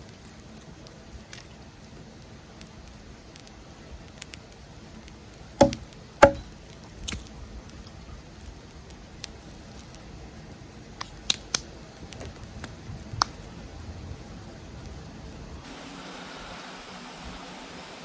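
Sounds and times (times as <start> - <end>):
sharp knocks: 5.6 - 6.5.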